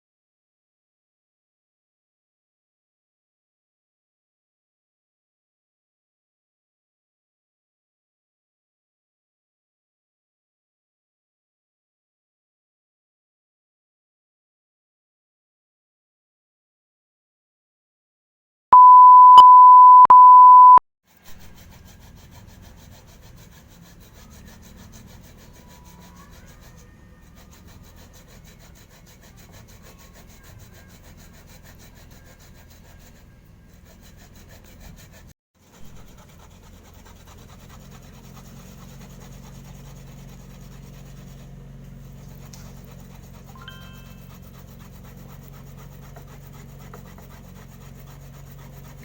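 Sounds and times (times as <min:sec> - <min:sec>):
electronic beep tone: 0:18.8 - 0:20.8.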